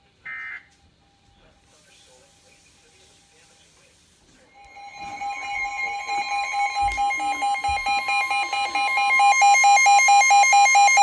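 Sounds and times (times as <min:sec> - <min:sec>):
weather radio alert tones: 0:04.5 - 0:11.0
pulsing beep: 0:04.6 - 0:11.0.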